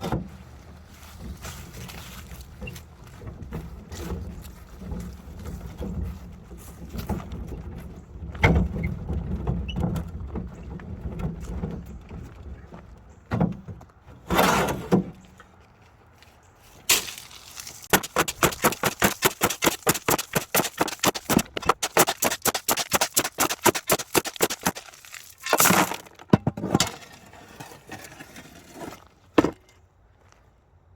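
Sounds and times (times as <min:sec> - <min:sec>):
gravel scraping and crunching: 0:00.3 - 0:13.2, 0:14.1 - 0:29.5
rapid gravel crunches: 0:15.2 - 0:29.2.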